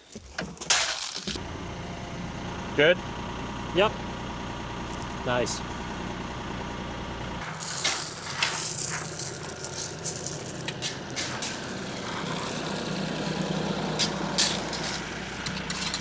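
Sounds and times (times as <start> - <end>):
clattering and scraping clicks: 0.0 - 1.4, 7.4 - 16.0
machine engine running: 1.4 - 16.0.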